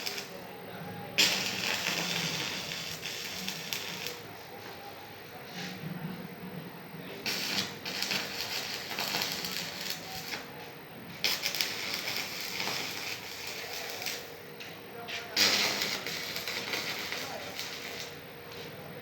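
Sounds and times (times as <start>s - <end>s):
arc welding crackling: 0.0s - 0.5s, 1.2s - 4.3s, 7.2s - 10.6s, 11.2s - 14.7s, 15.3s - 18.3s.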